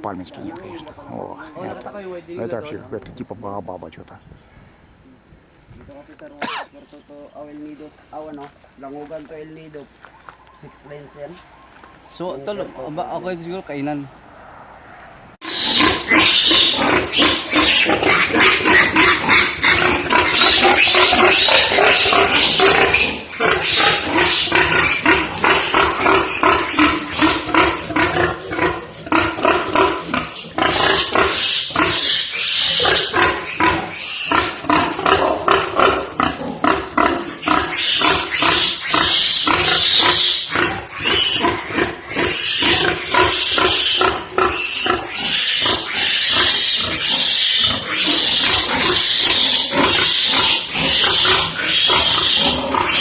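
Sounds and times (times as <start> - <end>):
pigs grunting and squealing: 15.4 - 53.0.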